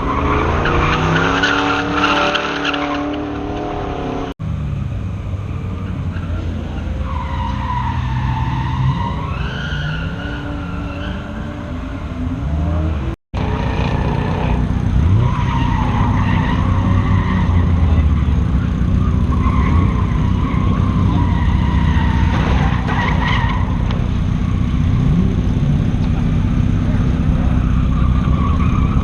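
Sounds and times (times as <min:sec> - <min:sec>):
tyre squeal: 0:05.9 - 0:12.0, 0:13.4 - 0:25.2, 0:27.4 - 0:29.0
car engine running hard: 0:11.5 - 0:29.0.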